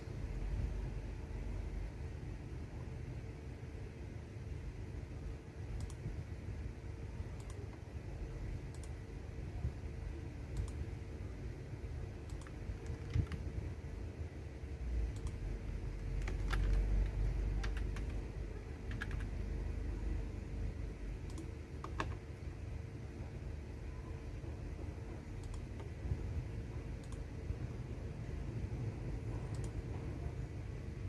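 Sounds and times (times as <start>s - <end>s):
faint steady hum: 0.0s - 31.0s
keyboard keys clicking: 12.2s - 13.6s, 15.1s - 19.4s, 21.2s - 22.3s.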